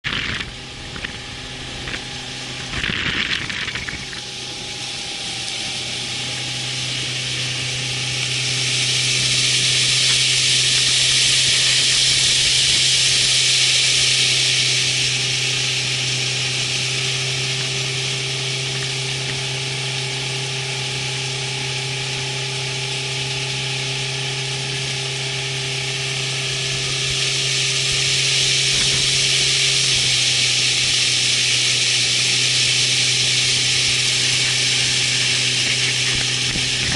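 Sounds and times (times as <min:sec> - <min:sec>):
low motor hum: 0:00.0 - 0:36.9
loud rushing hiss: 0:00.5 - 0:36.9.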